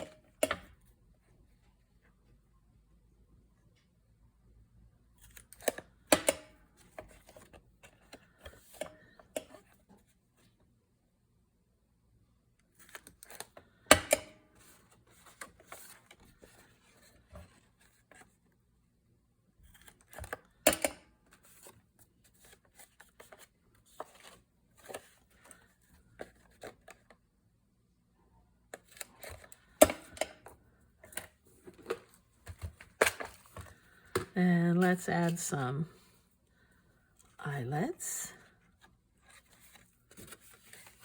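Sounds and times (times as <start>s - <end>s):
paper and tool handling: 39.2s - 41.0s.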